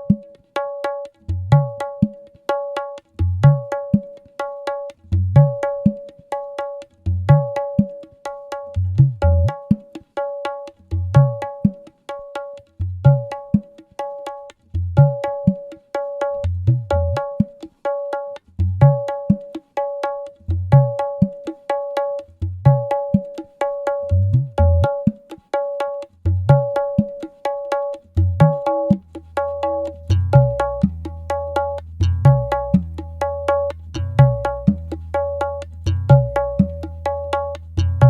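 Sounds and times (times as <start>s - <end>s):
pitched tapping percussion: 0.0s - 38.0s.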